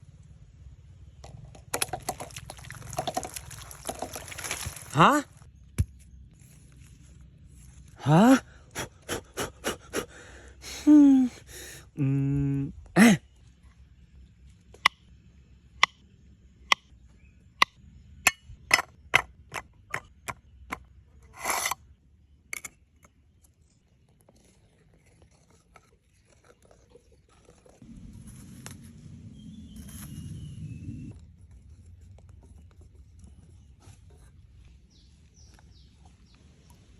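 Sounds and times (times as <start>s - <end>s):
low rumbling noise: 27.8s - 33.8s.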